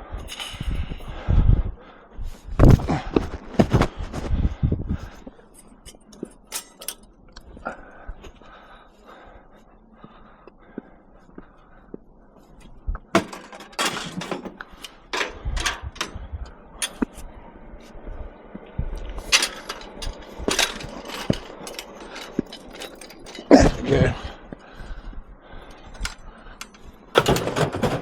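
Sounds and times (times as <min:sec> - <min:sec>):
scrap metal knocking and rattling: 0:05.9 - 0:07.1, 0:13.1 - 0:17.2, 0:19.1 - 0:24.2, 0:25.9 - 0:28.0
sharp metal clanks: 0:06.1 - 0:07.1, 0:19.2 - 0:23.7.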